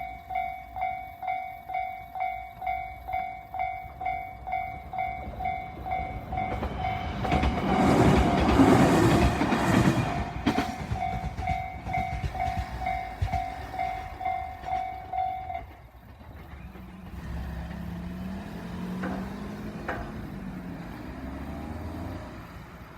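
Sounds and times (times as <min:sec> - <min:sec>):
level crossing bells ringing: 0:00.0 - 0:08.6, 0:10.0 - 0:16.0
train wheels passing: 0:00.0 - 0:22.9.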